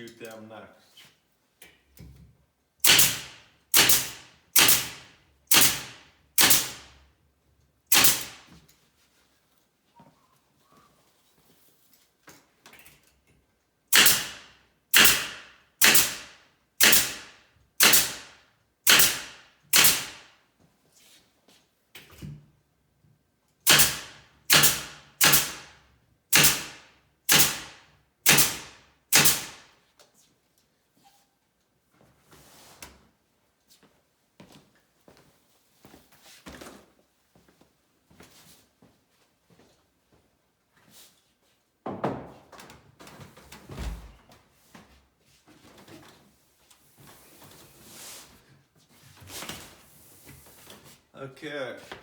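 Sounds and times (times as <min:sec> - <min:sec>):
nail gun shots: 0:02.8 - 0:06.9, 0:07.9 - 0:08.5, 0:13.9 - 0:20.4, 0:23.7 - 0:29.8.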